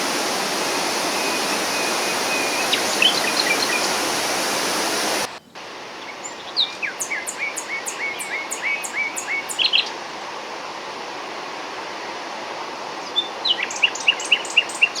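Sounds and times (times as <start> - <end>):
songbird singing: 0.0 - 10.0, 13.0 - 15.0
distant flowing water: 0.0 - 15.0.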